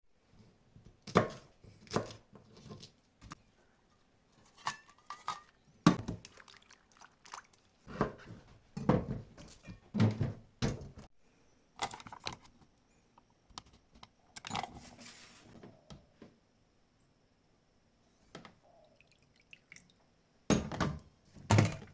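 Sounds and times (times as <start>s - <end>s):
kitchen utensils and dishes clattering: 4.4s - 6.1s.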